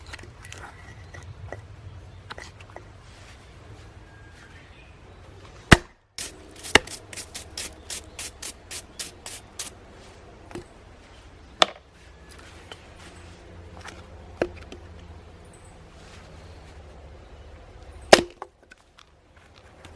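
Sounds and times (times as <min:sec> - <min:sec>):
hatchet chopping wood: 0:05.7 - 0:06.0, 0:18.1 - 0:18.5.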